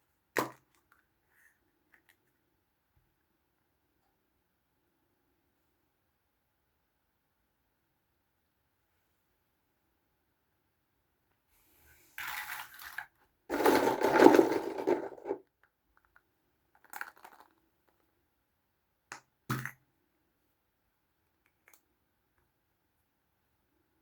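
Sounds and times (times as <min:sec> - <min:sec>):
packaging crinkling: 0:13.5 - 0:15.4.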